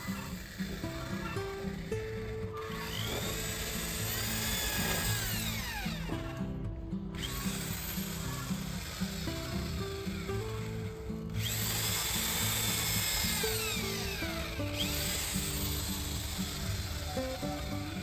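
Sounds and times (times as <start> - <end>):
background music: 0.0 - 18.0
power drill whining: 0.0 - 18.0.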